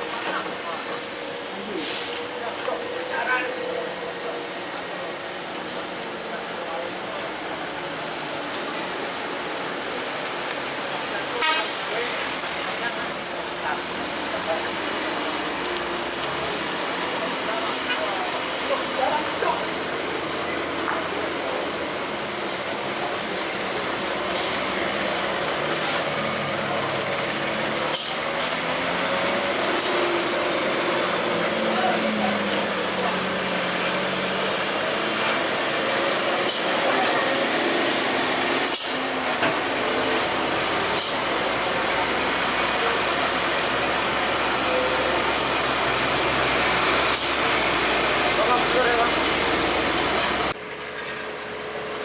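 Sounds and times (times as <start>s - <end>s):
road noise hiss: 0.0s - 52.0s
truck engine running: 0.0s - 52.0s.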